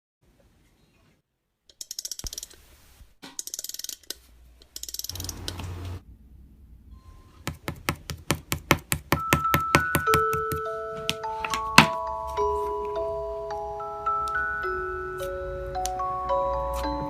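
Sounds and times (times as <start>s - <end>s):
steady clicks: 3.4s - 5.7s
bell-like tones: 9.2s - 17.0s.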